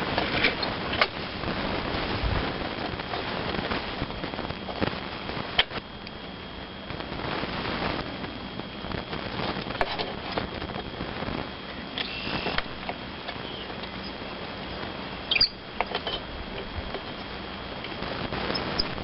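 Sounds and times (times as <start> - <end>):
short high squeaks: 15.3 - 15.6.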